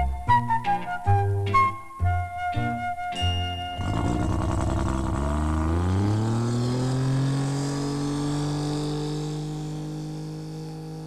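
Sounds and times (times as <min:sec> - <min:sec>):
cartoon engine drone: 0:03.7 - 0:11.0.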